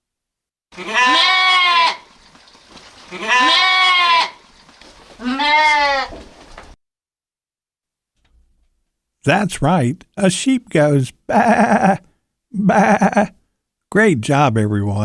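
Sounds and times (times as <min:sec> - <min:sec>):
sheep bleating: 0:00.8 - 0:02.1, 0:03.1 - 0:04.4, 0:05.2 - 0:06.1, 0:11.3 - 0:12.0, 0:12.6 - 0:13.4.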